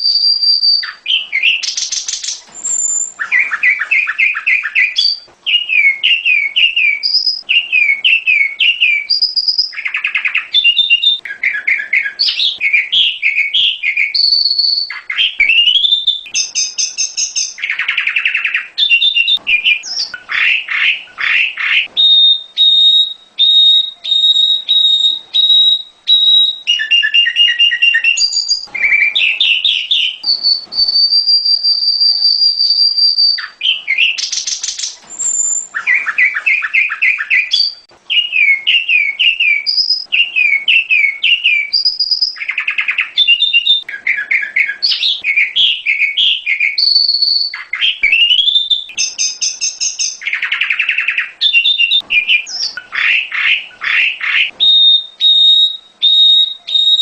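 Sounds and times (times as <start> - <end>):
bird song whistles and trills: 0.0 - 57.0.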